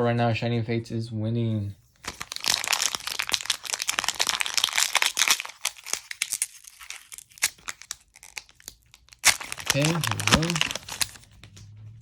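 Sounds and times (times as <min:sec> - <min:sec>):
foil wrapper crinkling and tearing: 0:02.0 - 0:11.5.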